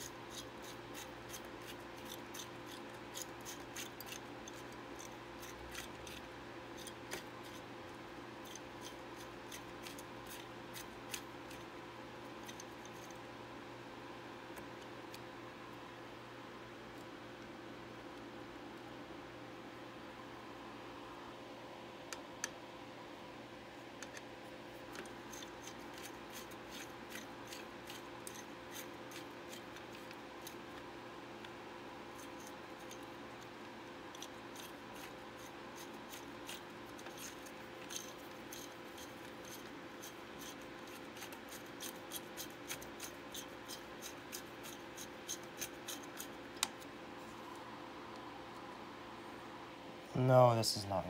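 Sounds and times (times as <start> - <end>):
faint steady hum: 0.0 - 51.0.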